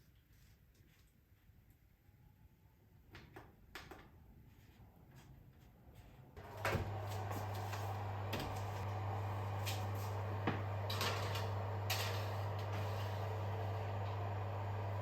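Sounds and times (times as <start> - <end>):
kitchen appliance humming: 6.4 - 15.0.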